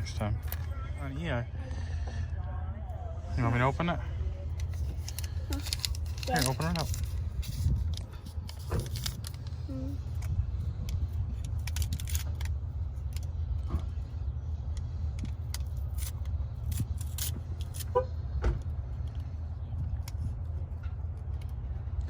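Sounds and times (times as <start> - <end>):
steady low hum: 0.0 - 22.0
plastic packaging crackling: 4.7 - 9.4.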